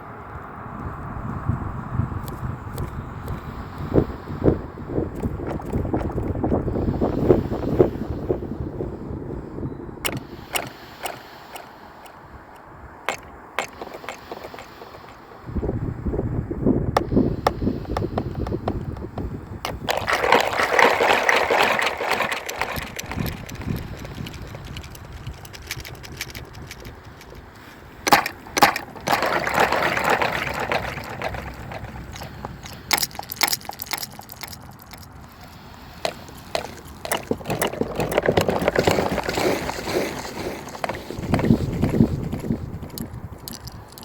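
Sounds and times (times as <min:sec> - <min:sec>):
water swishing and gurgling: 0:17.0 - 0:35.3.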